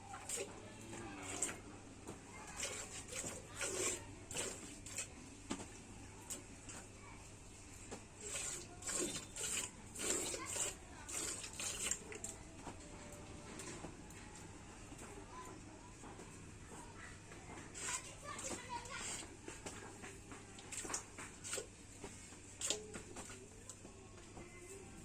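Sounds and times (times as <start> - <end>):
milk squirting into a pail: 0.1 - 1.6, 2.4 - 6.8, 8.2 - 12.4, 17.7 - 23.8.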